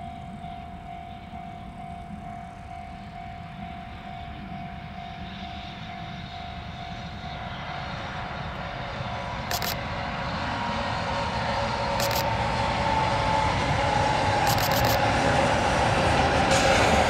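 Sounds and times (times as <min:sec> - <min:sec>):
level-crossing warning bell: 0:00.0 - 0:09.8
freight train rumble: 0:00.0 - 0:17.0.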